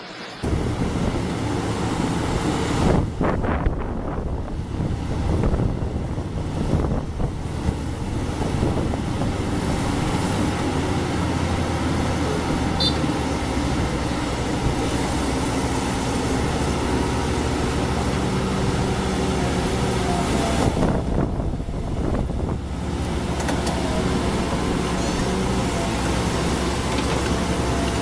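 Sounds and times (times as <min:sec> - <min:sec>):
heavy vehicle engine running: 0:00.0 - 0:28.0
short high-pitched beep: 0:12.8 - 0:13.1.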